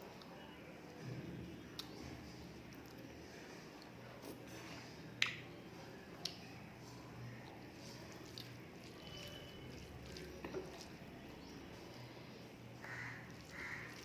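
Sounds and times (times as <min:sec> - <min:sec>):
wet chewing sounds: 0:07.3 - 0:12.0, 0:12.7 - 0:14.0.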